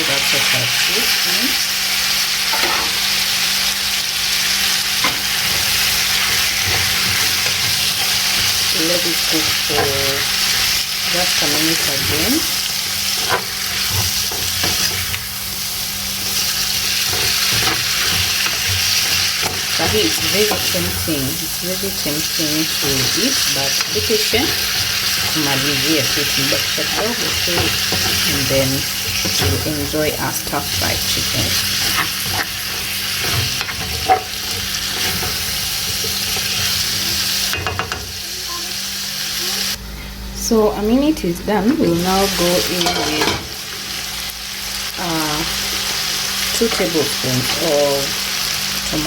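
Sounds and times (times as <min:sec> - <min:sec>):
food sizzling in a pan: 0:00.0 - 0:39.8, 0:42.0 - 0:49.0.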